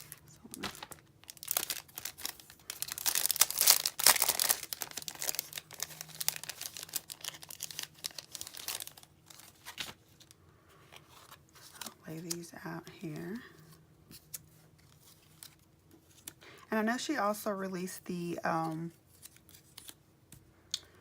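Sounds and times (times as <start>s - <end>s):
packaging crinkling and tearing: 0.0s - 10.4s, 11.0s - 12.5s, 14.2s - 16.4s.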